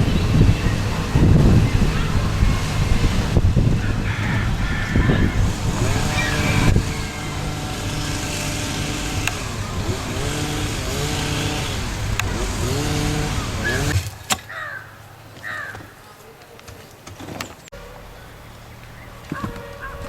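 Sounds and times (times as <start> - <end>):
vehicle engine revving: 0.0 - 14.1.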